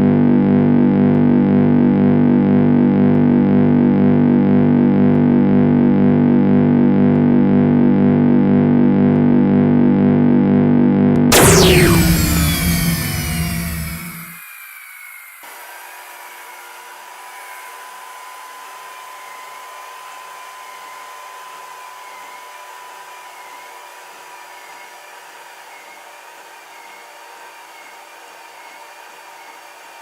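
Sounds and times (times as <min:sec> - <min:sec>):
stepper motor tones: 0:11.2 - 0:15.4
thin steady whine: 0:11.3 - 0:15.4.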